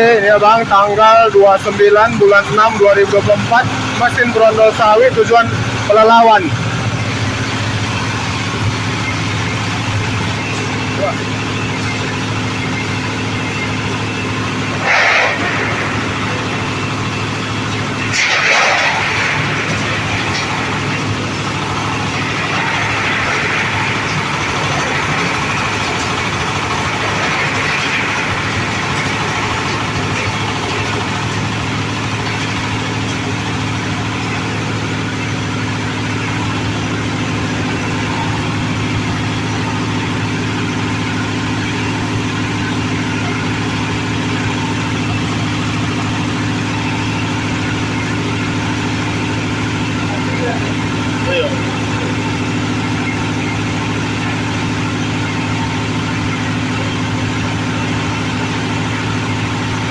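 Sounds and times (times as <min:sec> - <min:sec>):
thresher engine droning: 0:00.0 - 0:59.9
bright rushing noise: 0:10.8 - 0:29.0.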